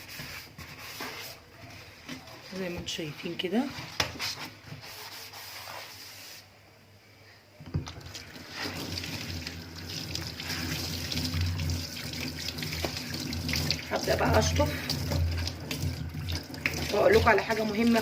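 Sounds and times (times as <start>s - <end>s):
water running into a steel sink: 8.0s - 18.0s.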